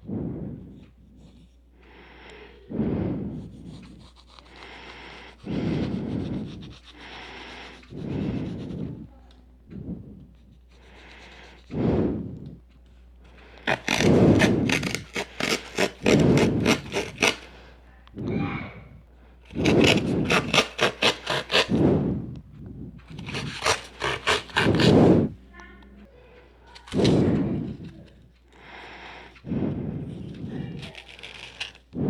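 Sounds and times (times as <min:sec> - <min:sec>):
cardboard and paper scraping: 0:13.6 - 0:17.7, 0:19.5 - 0:22.0, 0:23.0 - 0:25.4, 0:26.7 - 0:28.2, 0:30.1 - 0:31.9.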